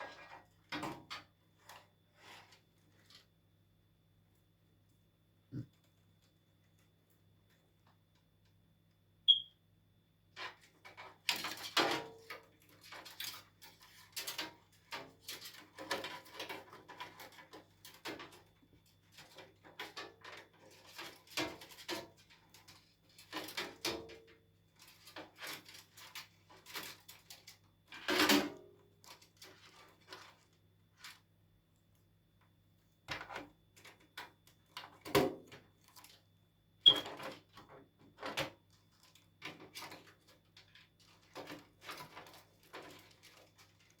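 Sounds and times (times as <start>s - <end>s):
short high beep: 9.3s - 9.5s.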